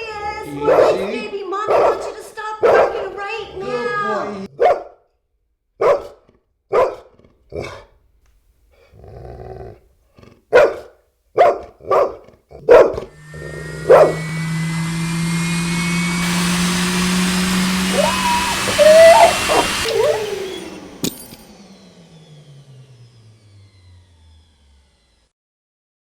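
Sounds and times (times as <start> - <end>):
dog growling: 0.0 - 4.6, 8.8 - 10.5, 17.9 - 20.6
dog barking: 0.5 - 3.4, 4.4 - 5.0, 5.8 - 7.9, 10.5 - 13.1, 13.8 - 14.2, 17.9 - 20.3
motor hum with high whine: 13.1 - 25.3.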